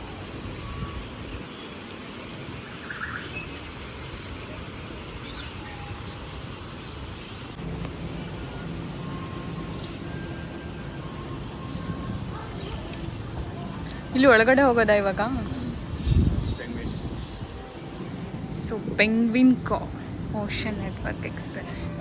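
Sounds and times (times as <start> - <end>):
outdoor background noise: 0.0 - 22.0
faint bird chirps: 2.6 - 4.3
low hum: 5.9 - 22.0.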